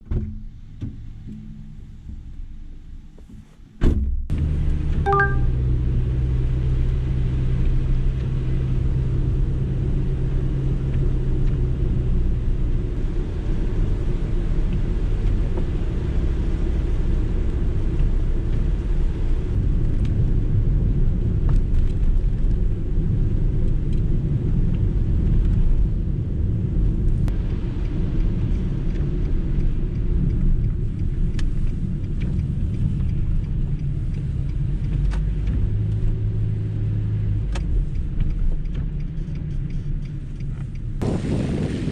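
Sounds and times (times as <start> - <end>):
short beep: 5.1 - 5.6.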